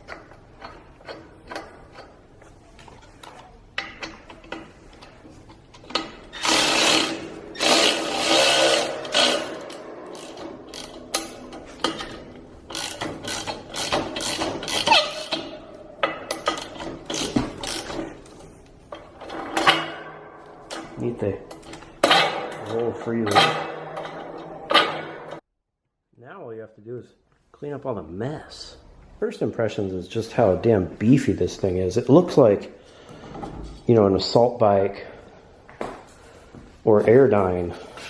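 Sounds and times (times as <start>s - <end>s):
ratchet clicking: 5.9s - 15.6s, 16.3s - 18.1s
metal rasping: 6.0s - 18.0s.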